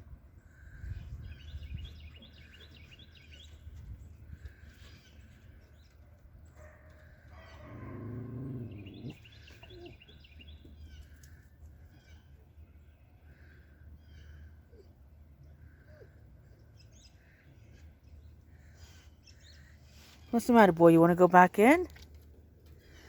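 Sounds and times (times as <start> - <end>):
faint outdoor background noise: 0.0 - 23.0
small birds chirping: 7.6 - 14.5.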